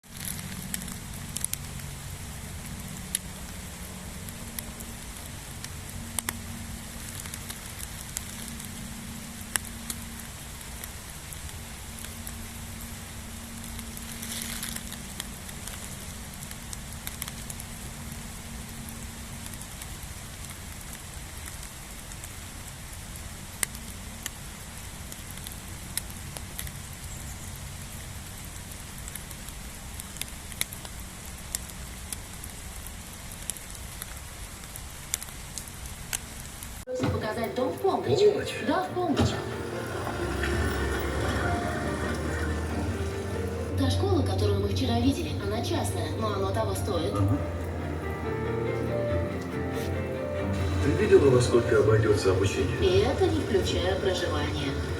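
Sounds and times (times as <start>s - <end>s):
sharp raindrop taps: 0.0s - 22.4s
low steady hum: 0.0s - 33.8s, 36.8s - 54.9s
steady rain: 0.0s - 54.9s.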